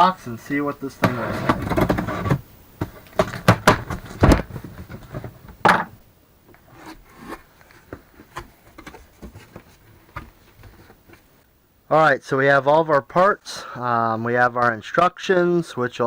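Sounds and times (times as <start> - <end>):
cardboard box rubbing and scraping: 1.0 - 5.4, 6.6 - 11.1.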